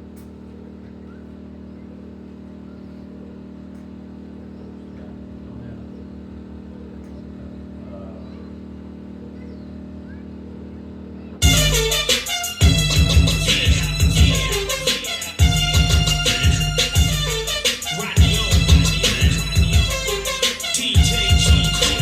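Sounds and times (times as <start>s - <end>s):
engine idling: 0.0s - 22.0s
loud hip-hop music: 11.4s - 22.0s.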